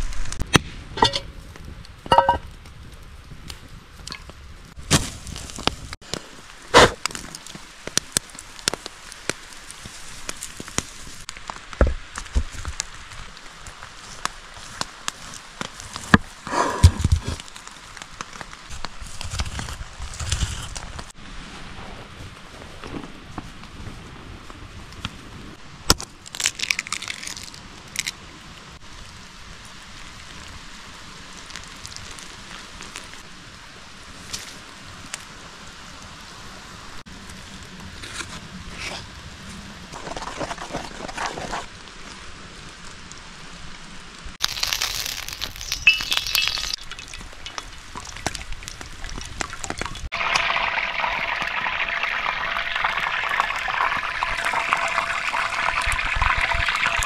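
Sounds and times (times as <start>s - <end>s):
crunching crackles: 0.0s - 21.2s, 21.8s - 33.4s, 37.2s - 57.0s
rain falling: 41.6s - 57.0s.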